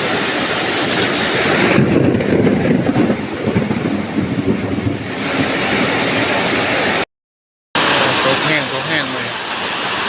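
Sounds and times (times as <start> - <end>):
wind gusting against microphone: 0.0 - 7.0.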